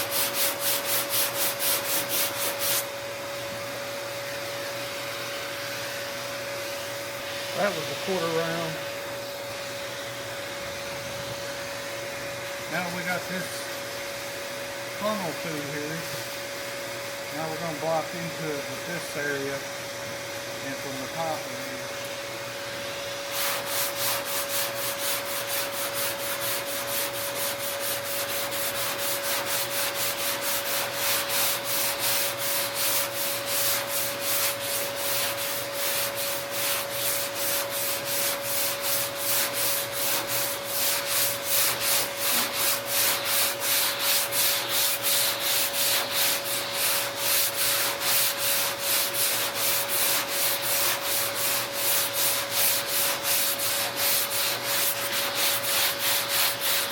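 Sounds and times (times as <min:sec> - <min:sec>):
sandpaper scraping back and forth: 0:00.0 - 0:02.9, 0:07.6 - 0:08.8, 0:12.7 - 0:13.6, 0:15.0 - 0:16.2, 0:17.4 - 0:19.6, 0:23.2 - 0:56.9.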